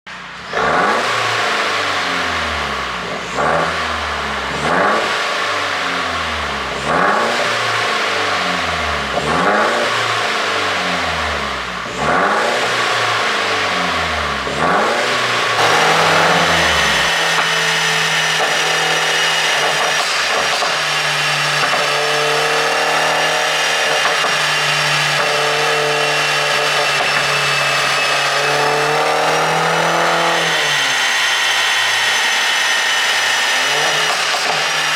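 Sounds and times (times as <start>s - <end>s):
car engine revving with exhaust pops: 15.6s - 17.8s.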